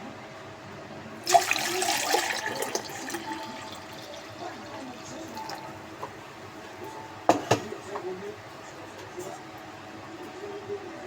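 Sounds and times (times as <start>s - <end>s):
water pouring and splashing: 1.2s - 5.8s.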